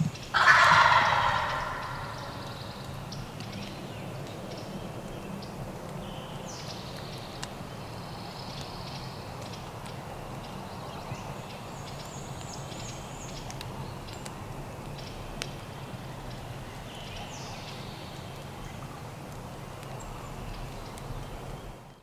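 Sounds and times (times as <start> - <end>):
songbirds calling: 0.0 - 18.8
outdoor background noise: 0.0 - 22.0.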